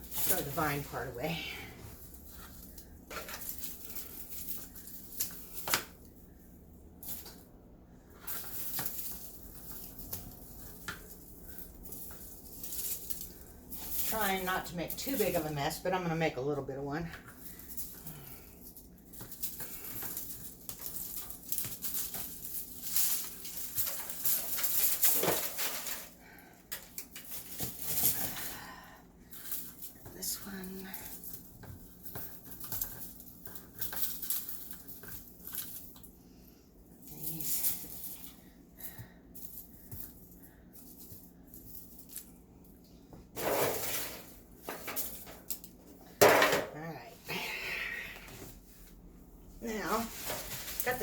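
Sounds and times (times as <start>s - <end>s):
soil rustling and scraping in bucket: 0.0s - 3.6s, 12.5s - 16.8s, 43.3s - 44.6s, 49.6s - 51.0s
plants rustling: 0.0s - 7.5s, 8.1s - 36.1s, 46.8s - 51.0s.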